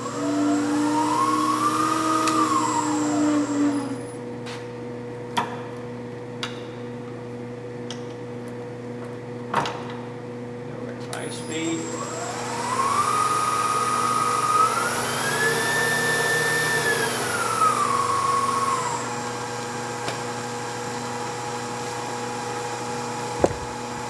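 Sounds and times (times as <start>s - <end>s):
milling machine spindle whine: 0.0s - 4.2s, 11.2s - 24.0s.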